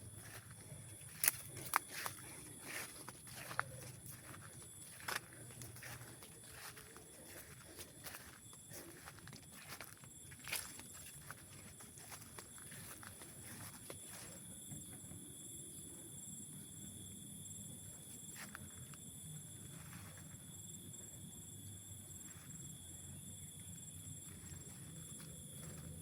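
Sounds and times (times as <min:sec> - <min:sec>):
soft footsteps on trail: 0:00.0 - 0:15.4, 0:18.0 - 0:21.1, 0:24.2 - 0:26.0
high-pitched insect chorus: 0:00.0 - 0:26.0.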